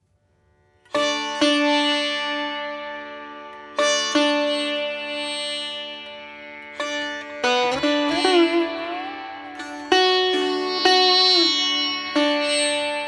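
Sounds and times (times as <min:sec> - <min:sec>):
plucked string instrument notes: 0:03.4 - 0:13.0.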